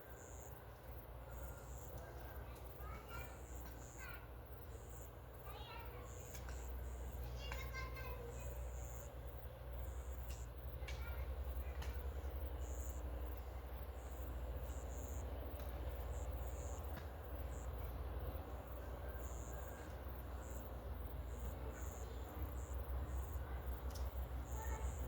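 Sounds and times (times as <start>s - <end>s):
insects chirping: 0.0s - 25.0s
low steady rumble: 0.0s - 25.0s.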